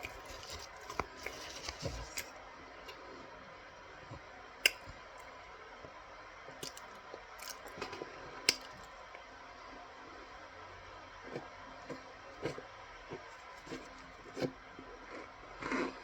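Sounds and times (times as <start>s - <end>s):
chewing with crunches: 0.0s - 3.0s, 6.6s - 9.2s, 11.2s - 16.0s.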